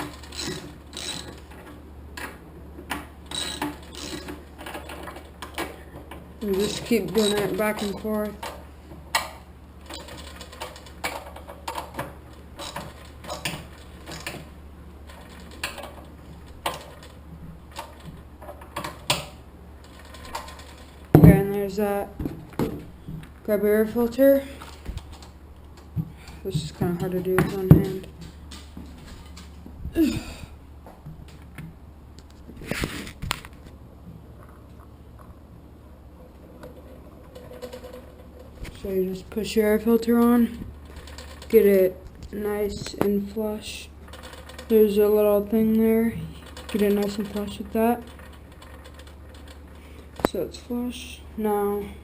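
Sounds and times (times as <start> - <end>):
ratchet wrench clicking: 0.2 - 1.4.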